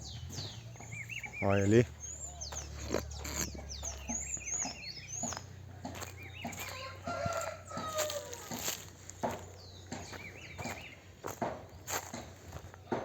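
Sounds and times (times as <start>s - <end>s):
small birds chirping: 0.0s - 13.0s
rooster crowing: 5.9s - 8.9s.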